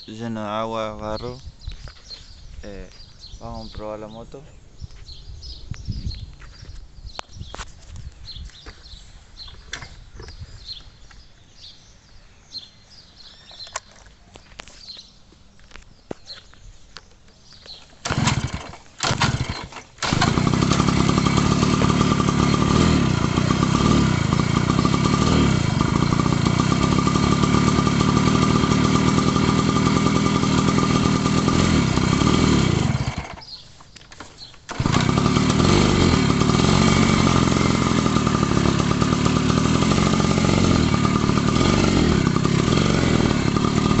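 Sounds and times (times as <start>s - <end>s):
motorcycle engine starting and running: 18.0s - 44.0s.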